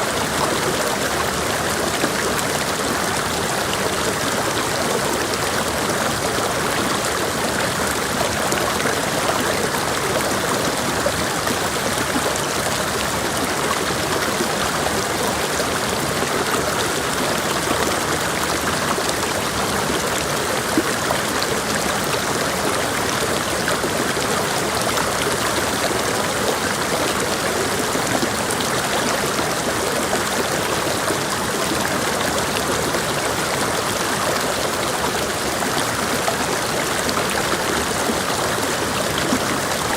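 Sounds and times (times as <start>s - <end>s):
creek water rushing over rocks: 0.0s - 39.9s.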